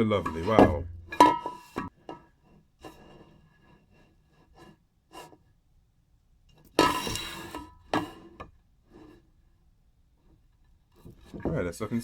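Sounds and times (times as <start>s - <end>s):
metal bottle scraping rub: 0.0s - 1.9s, 6.8s - 8.0s
sharp knocks on bottles: 0.3s - 1.9s
taps on metal bottles: 0.3s - 1.9s.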